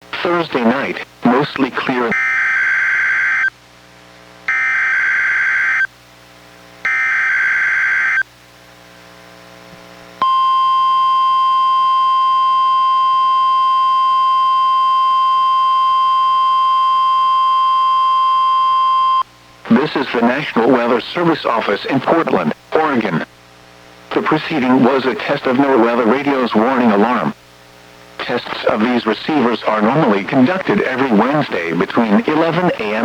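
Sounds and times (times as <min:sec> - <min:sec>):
steady warning alarm tone: 0:02.1 - 0:03.5, 0:04.5 - 0:05.9, 0:06.8 - 0:08.2, 0:10.2 - 0:19.3.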